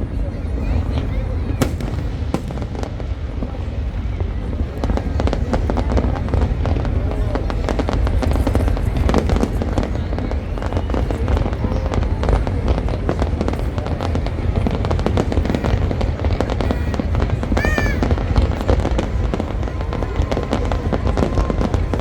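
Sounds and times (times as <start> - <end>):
fireworks bangs and crackles: 0.0 - 22.0
deep booming rumble: 1.5 - 6.4.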